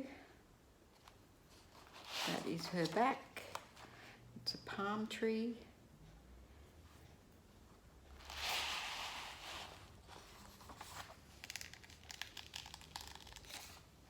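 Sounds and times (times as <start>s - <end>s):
crinkling crackles: 9.6s - 13.9s.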